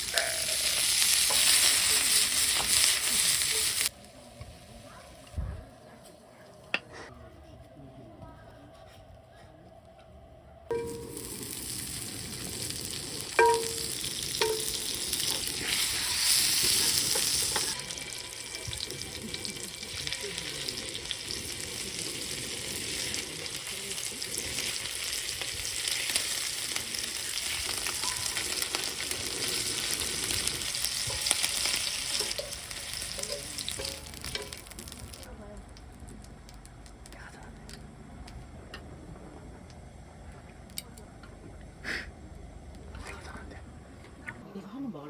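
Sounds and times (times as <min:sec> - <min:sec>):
food sizzling in a pan: 0:00.0 - 0:05.3, 0:10.7 - 0:35.3.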